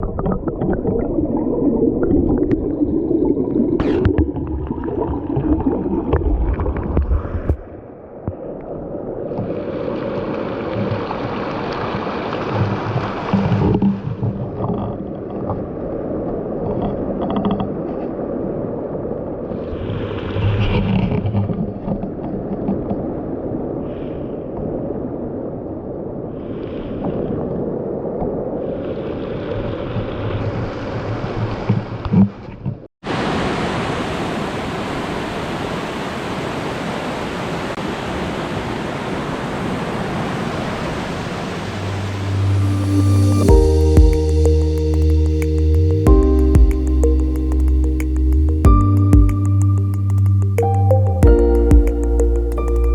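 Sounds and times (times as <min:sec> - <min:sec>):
waterfall roaring: 0:33.1 - 0:43.3.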